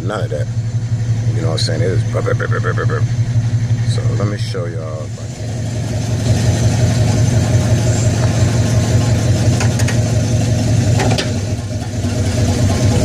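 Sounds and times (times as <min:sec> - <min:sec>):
car engine running loud: 0:00.0 - 0:13.0.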